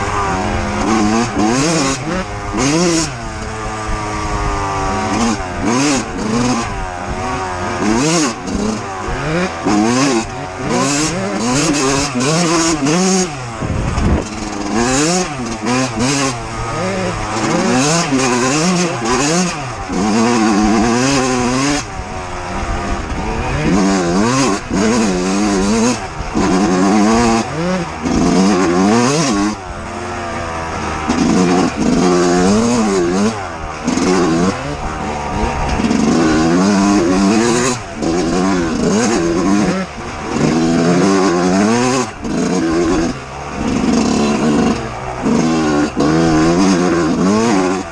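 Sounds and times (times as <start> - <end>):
dirt bike engine revving: 0.0 - 47.9.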